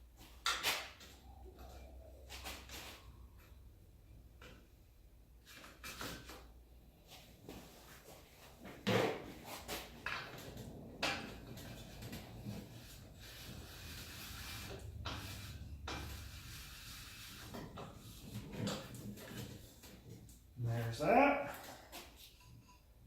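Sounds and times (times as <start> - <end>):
rubbing and scraping: 7.5 - 20.3
objects knocking and clunking: 8.6 - 13.6, 14.6 - 16.3, 17.4 - 20.3.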